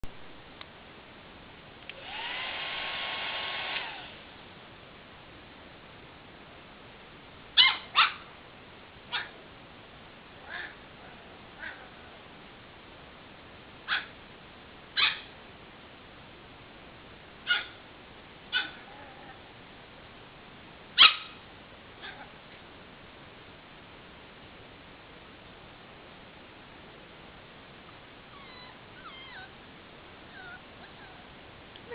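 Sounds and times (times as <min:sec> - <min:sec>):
dog barking: 0:07.6 - 0:08.3, 0:09.1 - 0:09.4, 0:13.9 - 0:14.1, 0:15.0 - 0:15.3, 0:17.5 - 0:17.8, 0:18.5 - 0:18.9, 0:21.0 - 0:21.4.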